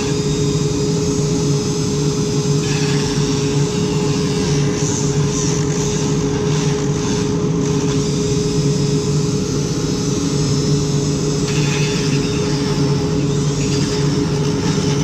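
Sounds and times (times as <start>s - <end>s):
rotary tool whining: 0.0s - 15.0s.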